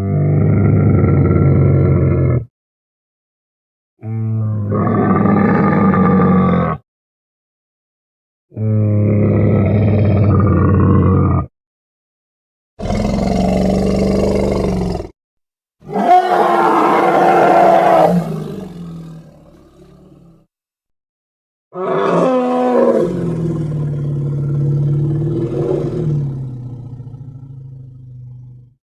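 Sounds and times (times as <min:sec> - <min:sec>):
low dinosaur roars: 0:00.0 - 0:02.5, 0:04.0 - 0:06.8, 0:08.6 - 0:11.5, 0:12.8 - 0:15.1, 0:15.9 - 0:20.5, 0:21.8 - 0:28.8.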